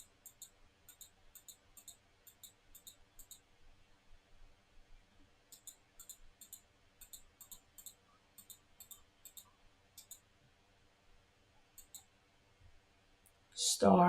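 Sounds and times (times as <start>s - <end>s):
faint sharp clicks: 5.5s - 10.2s, 11.8s - 12.1s.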